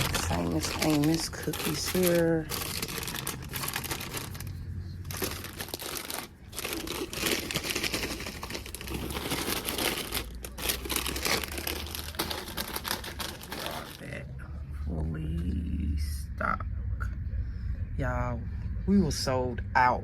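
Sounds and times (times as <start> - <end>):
plastic wrappers crinkling: 0.0 - 14.2.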